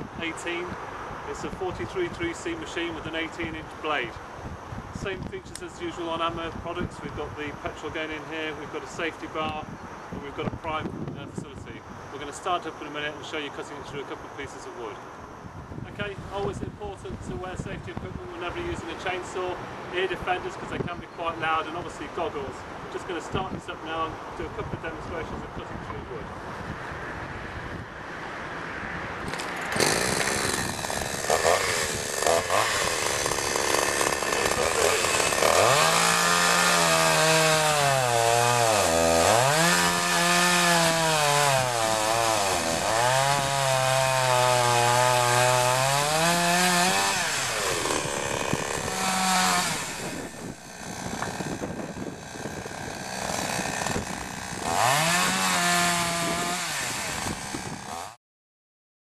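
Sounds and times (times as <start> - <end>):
chainsaw cutting through wood: 29.3 - 58.2.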